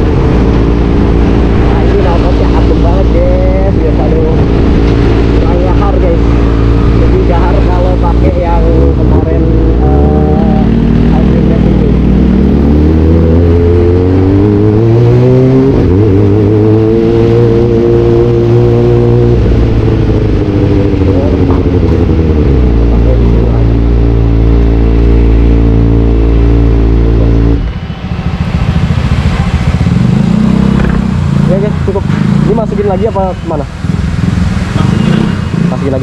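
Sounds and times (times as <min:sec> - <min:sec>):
motorcycle engine revving: 0:00.0 - 0:36.0.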